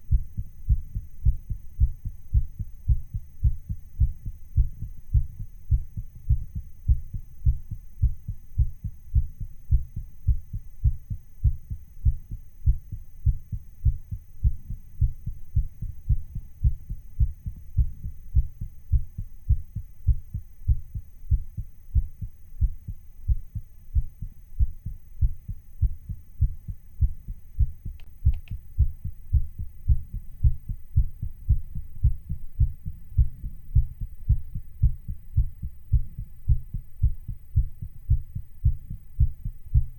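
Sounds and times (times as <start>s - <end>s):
fast heartbeat thumps: 0.0s - 39.9s.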